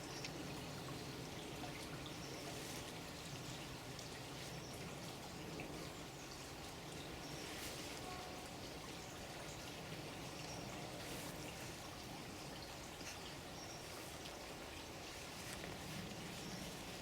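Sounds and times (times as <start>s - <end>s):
running water: 0.0s - 17.0s.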